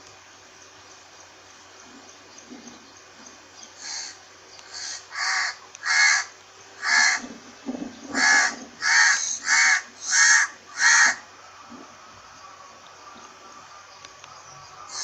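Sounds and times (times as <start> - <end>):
crow cawing: 3.8 - 7.3, 8.1 - 11.3.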